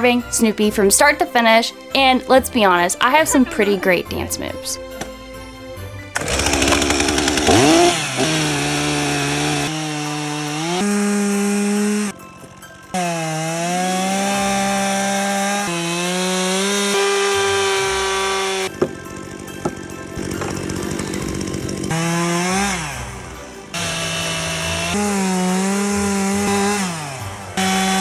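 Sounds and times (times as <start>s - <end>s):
gas chainsaw carving wood: 6.1s - 28.0s.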